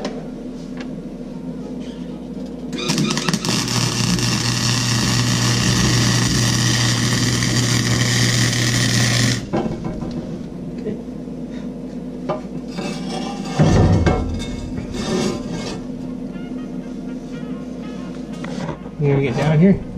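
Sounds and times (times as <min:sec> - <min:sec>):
welder low hum: 0:00.0 - 0:18.9
welder arc crackling: 0:02.7 - 0:10.5.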